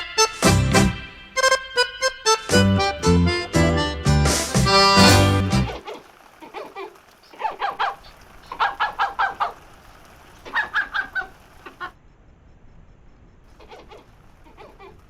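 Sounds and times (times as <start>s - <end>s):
accordion music: 0.0s - 5.8s
badgers calling: 4.6s - 12.0s, 13.5s - 15.0s.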